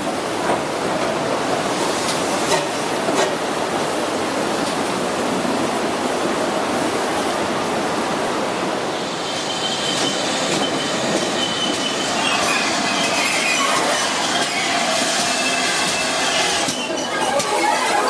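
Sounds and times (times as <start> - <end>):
train rushing past: 4.7 - 18.0
wheels squealing: 9.1 - 18.0.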